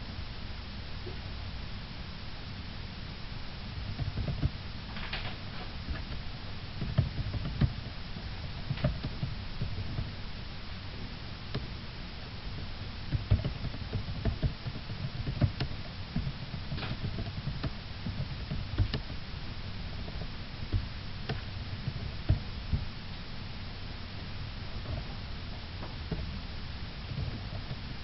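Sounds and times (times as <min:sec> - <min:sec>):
low hum: 0:00.0 - 0:28.0
light knocks and clicks: 0:13.1 - 0:19.2.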